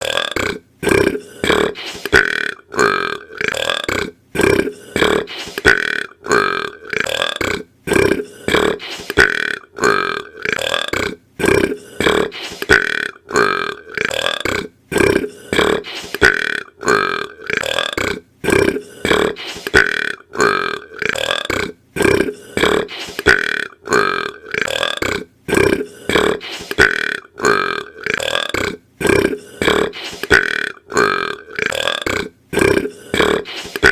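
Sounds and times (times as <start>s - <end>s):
boy burping: 0.0s - 33.9s.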